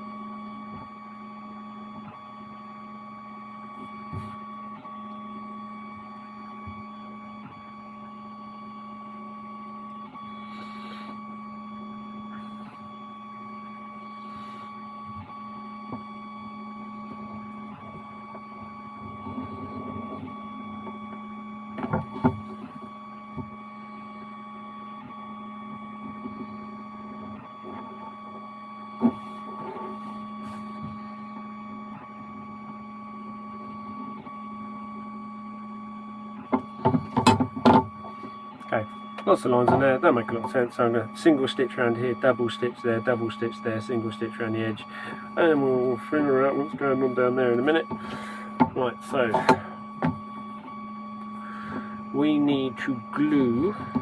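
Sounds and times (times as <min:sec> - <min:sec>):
machine hum: 0:00.0 - 0:54.0.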